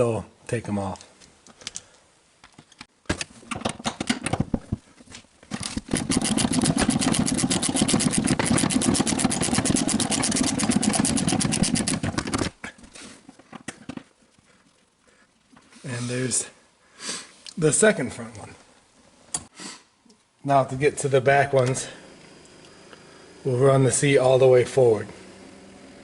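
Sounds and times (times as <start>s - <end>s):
ratchet clicking: 5.9s - 12.0s.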